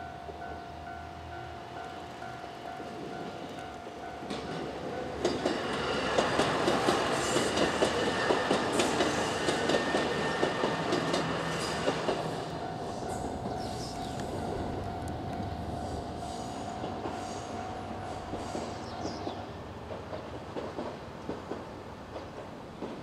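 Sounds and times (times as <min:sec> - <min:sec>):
level crossing warning bell: 0:00.0 - 0:05.9, 0:12.4 - 0:18.4
train wheels clacking over rail joints: 0:04.2 - 0:15.5, 0:19.9 - 0:23.0.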